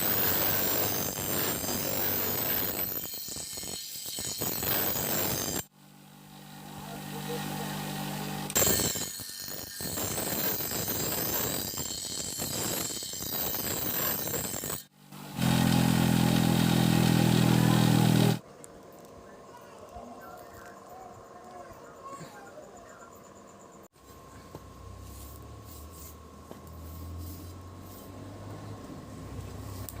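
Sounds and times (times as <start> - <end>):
loud motor hum: 5.9 - 8.6, 15.0 - 18.4.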